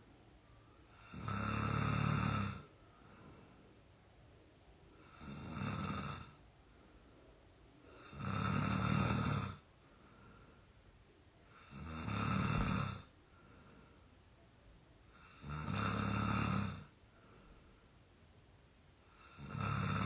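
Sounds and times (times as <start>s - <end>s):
quiet breathing: 0.0s - 20.0s
person snoring: 0.9s - 2.7s, 5.0s - 6.4s, 7.9s - 9.6s, 11.5s - 13.1s, 15.1s - 16.9s, 19.1s - 20.0s.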